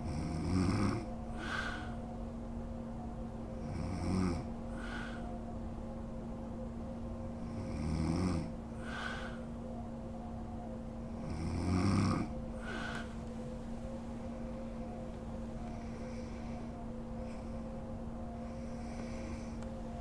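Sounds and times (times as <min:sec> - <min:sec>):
woman snoring: 0:00.0 - 0:01.9
steady low hum: 0:00.0 - 0:20.0.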